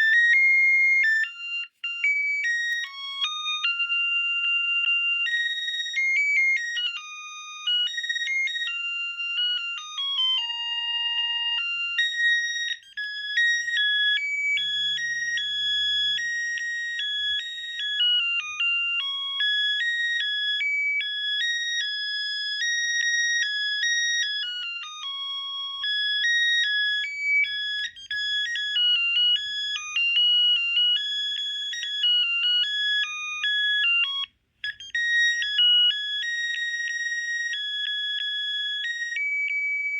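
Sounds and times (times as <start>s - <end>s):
high-pitched electronic ringtone: 0.0s - 39.9s.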